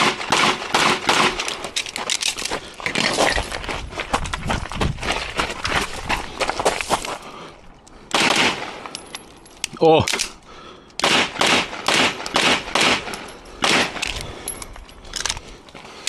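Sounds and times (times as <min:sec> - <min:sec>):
handgun shots echoing: 0:11.0 - 0:14.1.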